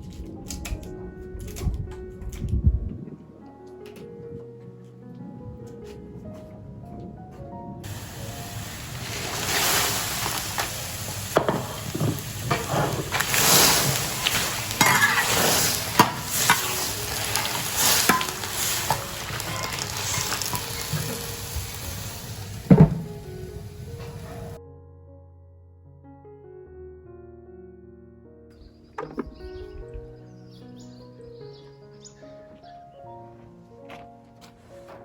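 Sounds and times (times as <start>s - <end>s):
sizzling: 7.8s - 24.6s
spatula scraping in a wok: 9.1s - 21.4s
metal knocking on pan: 11.4s - 13.2s, 22.7s - 23.2s.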